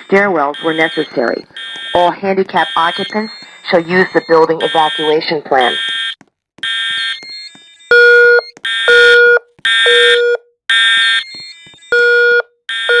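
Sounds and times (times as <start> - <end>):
fire alarm horn blasts: 0.0 - 7.2, 12.0 - 13.0.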